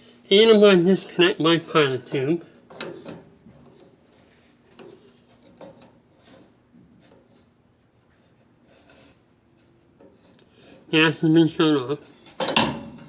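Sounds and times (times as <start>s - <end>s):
tool tapping and scraping metal: 12.0s - 13.0s.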